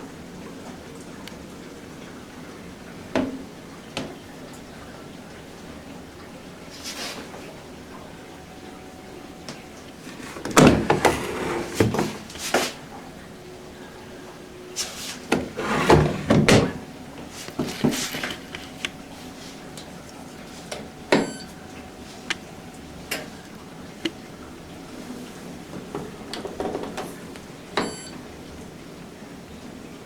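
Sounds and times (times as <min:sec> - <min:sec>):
washing machine door clunking: 0:10.0 - 0:12.8, 0:15.3 - 0:16.9.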